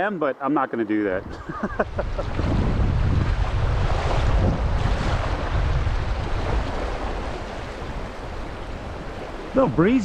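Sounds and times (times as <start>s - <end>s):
wind buffeting microphone: 1.2s - 10.0s
river rushing: 2.3s - 10.0s.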